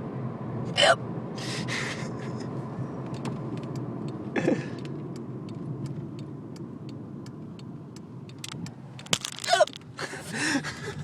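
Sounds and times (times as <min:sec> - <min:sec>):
car interior hum: 0:00.0 - 0:11.0
light regular ticking: 0:03.0 - 0:10.0.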